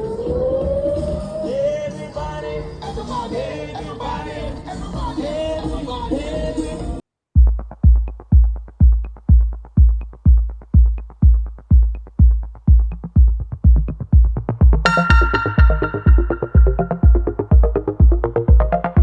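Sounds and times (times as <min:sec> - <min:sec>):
song with singing: 0:00.0 - 0:07.0
electronic dance track: 0:07.4 - 0:19.0
loud kick drum: 0:07.4 - 0:19.0
synth chords: 0:12.9 - 0:19.0.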